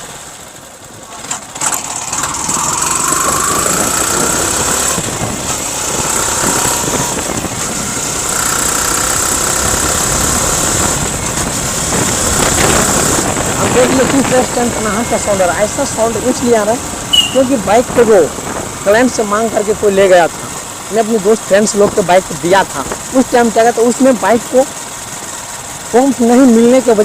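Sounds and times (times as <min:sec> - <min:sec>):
motorcycle engine revving: 0:00.0 - 0:27.0
engine rattling knock: 0:01.0 - 0:14.2.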